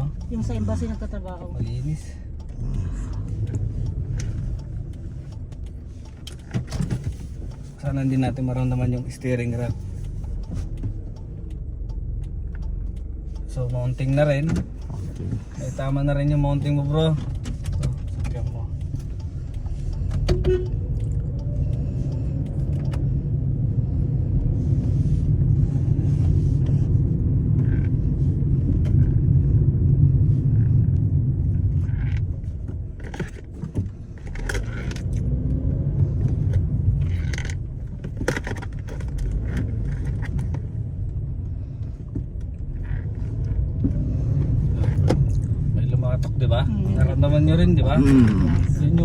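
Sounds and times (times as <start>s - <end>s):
car cabin rumble: 0.0s - 49.0s
clunks and rattles: 3.4s - 7.7s, 16.9s - 21.4s, 30.6s - 49.0s.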